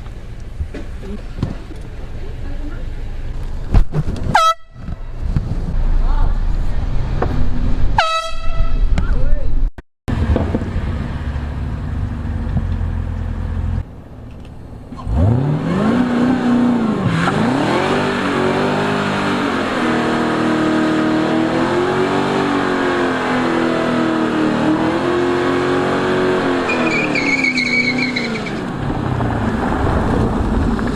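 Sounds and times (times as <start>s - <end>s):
low rumble: 0.2s - 15.0s
engine revving: 15.0s - 30.9s
high squeal: 26.7s - 28.6s.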